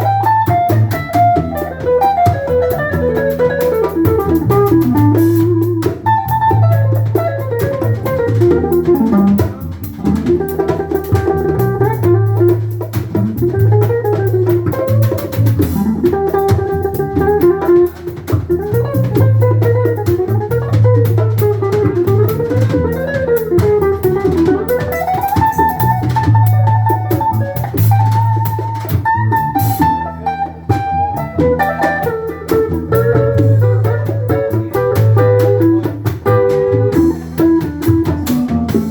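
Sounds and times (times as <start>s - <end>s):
drum kit: 0.0s - 38.9s
guitar melody: 0.0s - 38.9s.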